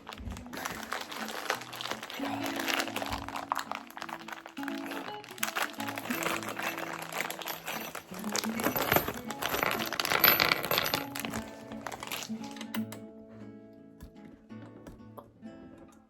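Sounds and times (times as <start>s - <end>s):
packaging crinkling: 0.0s - 12.6s
light background music: 0.0s - 16.0s
metal hardware clinking: 0.8s - 13.0s.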